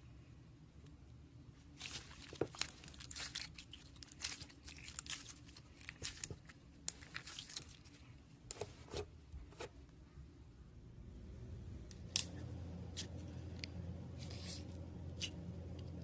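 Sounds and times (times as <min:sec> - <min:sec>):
slime crackling and popping: 0:01.8 - 0:07.9.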